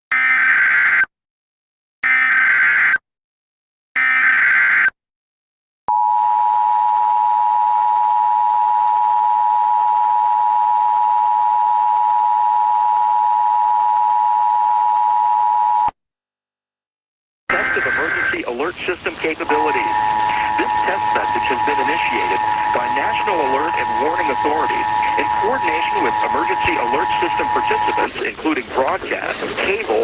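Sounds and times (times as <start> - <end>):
screeching digital data tones: 19.3 - 28.3
steady two-tone beep: 19.5 - 28.2.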